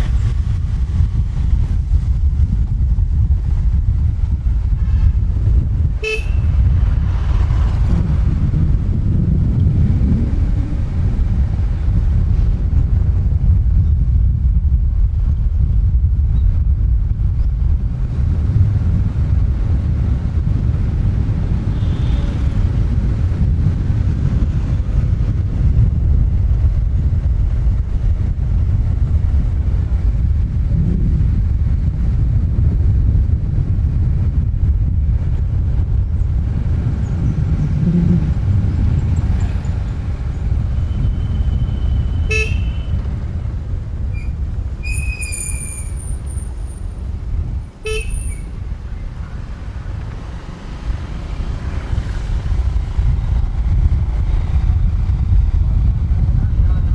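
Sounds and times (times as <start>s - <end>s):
heavy road traffic rumble: 0.0s - 56.9s
vehicle horn toots: 6.0s - 6.6s, 21.7s - 22.5s, 40.9s - 43.2s, 47.8s - 48.5s.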